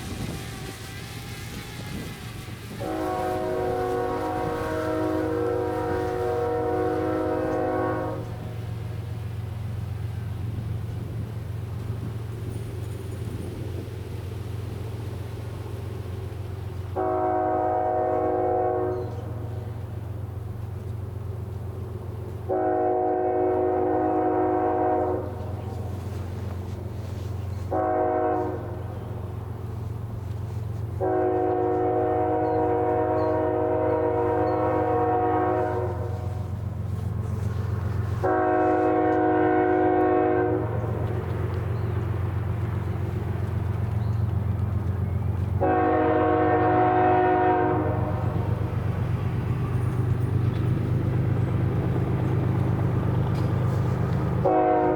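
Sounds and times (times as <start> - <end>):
locomotive air horn blasts: 0.0 - 8.8, 16.9 - 19.7, 22.4 - 26.2, 27.1 - 29.1, 30.5 - 41.2, 45.6 - 48.5, 53.4 - 54.9
locomotive engine rumble: 0.0 - 54.9.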